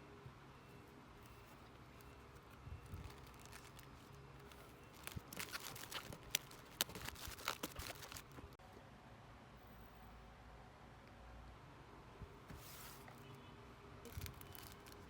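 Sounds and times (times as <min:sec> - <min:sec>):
packaging being torn open: 0:03.0 - 0:03.9, 0:04.9 - 0:08.4, 0:14.1 - 0:15.0.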